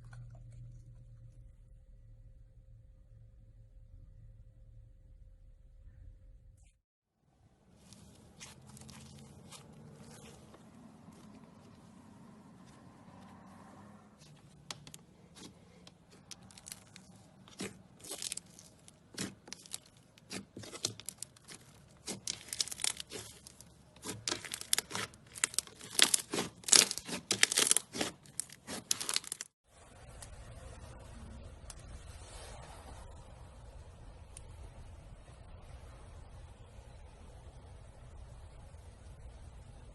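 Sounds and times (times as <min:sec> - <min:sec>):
slime crackling and popping: 0:14.7 - 0:29.5.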